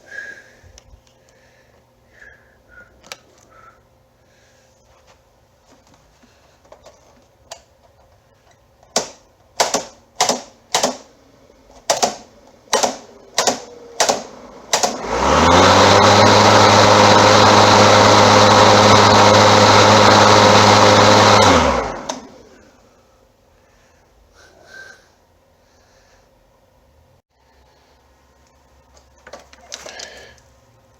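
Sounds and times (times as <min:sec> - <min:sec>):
electric lawn mower running: 0:13.0 - 0:22.8.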